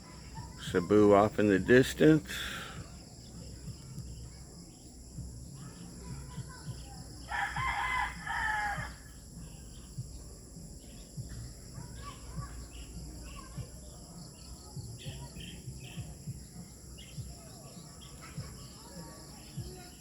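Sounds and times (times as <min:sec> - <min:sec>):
insects buzzing: 0:00.0 - 0:20.0
rooster crowing: 0:07.3 - 0:09.1.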